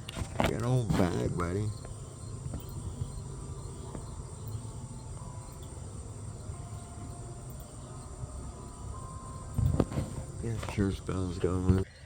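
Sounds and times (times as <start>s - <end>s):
insects chirring: 0.0s - 12.0s.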